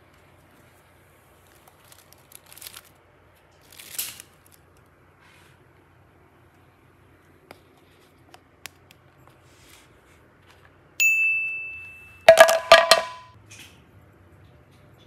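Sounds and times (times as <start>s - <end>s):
bright ding: 11.0s - 13.4s.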